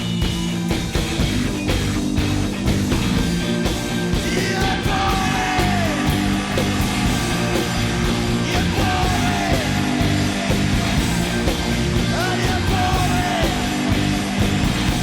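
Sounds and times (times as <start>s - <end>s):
live rock band playing: 0.0s - 15.0s
person singing: 4.1s - 14.0s.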